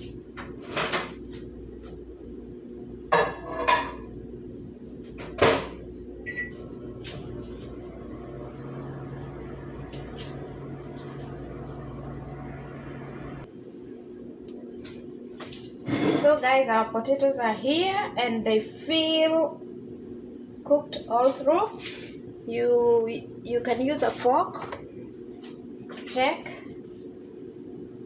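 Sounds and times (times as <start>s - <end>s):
microwave humming: 0.0s - 28.0s
keypad beep: 6.3s - 6.6s.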